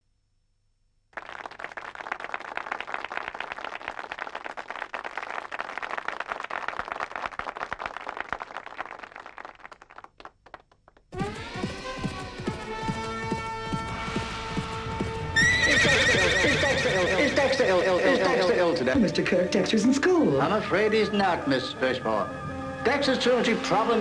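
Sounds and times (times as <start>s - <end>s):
audience applause: 1.2s - 11.1s.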